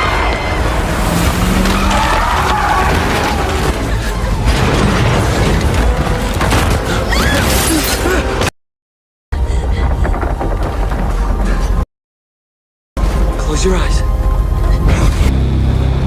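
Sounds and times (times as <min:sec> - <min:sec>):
crashing impacts: 0:00.2 - 0:07.1.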